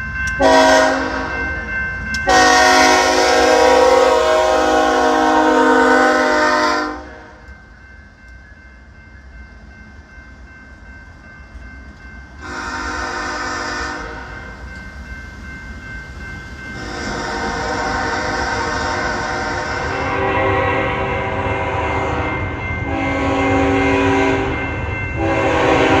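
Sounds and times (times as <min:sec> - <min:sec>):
locomotive air horn blasts: 0:00.4 - 0:01.4, 0:02.3 - 0:07.4, 0:12.4 - 0:14.5, 0:16.8 - 0:24.6, 0:25.2 - 0:26.0.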